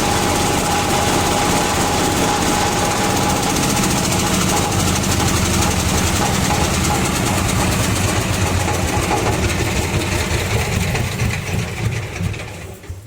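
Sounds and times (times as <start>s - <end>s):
chopping machine throb and hiss: 0.0s - 12.6s
diesel engine running: 0.0s - 13.0s.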